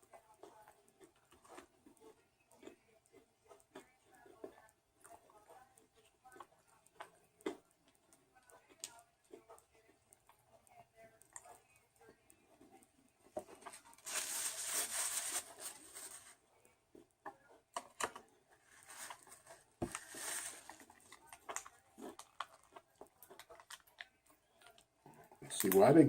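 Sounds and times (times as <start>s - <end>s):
food packaging rustling: 13.4s - 16.4s, 17.8s - 24.8s.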